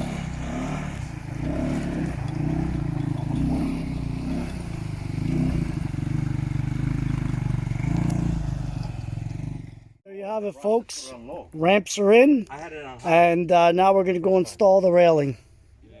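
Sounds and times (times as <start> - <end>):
engine running at low revs: 0.0 - 10.0.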